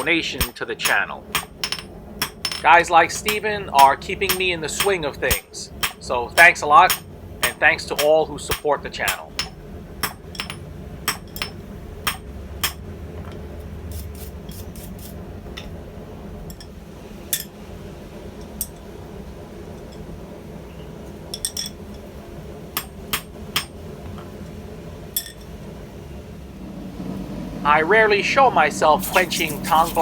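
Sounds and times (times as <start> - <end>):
hammer strikes on anvil: 0.0 - 12.8, 22.8 - 23.8
low hum: 0.0 - 30.0.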